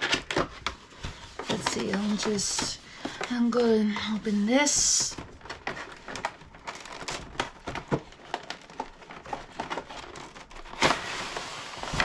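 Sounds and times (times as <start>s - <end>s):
packaging crinkling: 5.1s - 12.0s.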